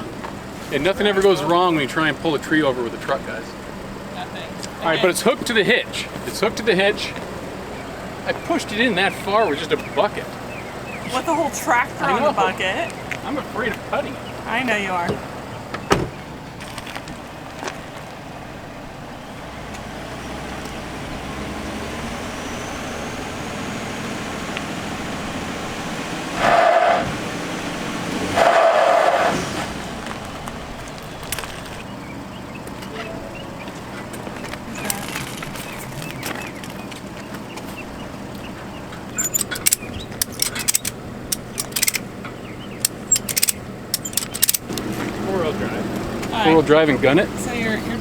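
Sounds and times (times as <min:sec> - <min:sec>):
truck engine running: 0:00.0 - 0:48.0
sharp clicks and rattles: 0:30.0 - 0:31.9, 0:33.6 - 0:45.2.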